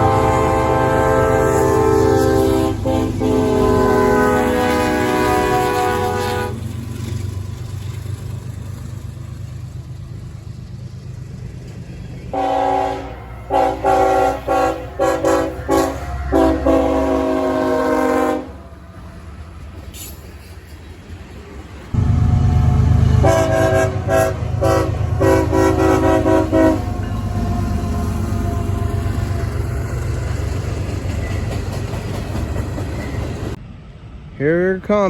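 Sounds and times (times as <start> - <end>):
locomotive air horn blasts: 0.0 - 6.6, 12.3 - 18.8, 22.0 - 29.4
low locomotive rumble: 0.0 - 34.9.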